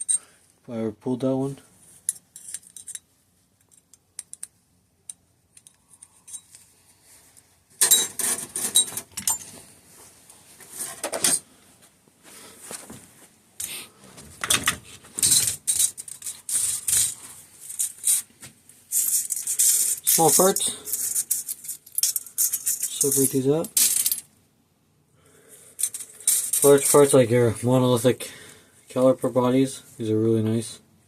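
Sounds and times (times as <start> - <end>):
small metal parts clinking: 0.0 - 0.2, 2.0 - 4.5, 5.1 - 6.6, 7.8 - 9.6, 14.6 - 18.2, 18.9 - 24.3, 25.7 - 27.0.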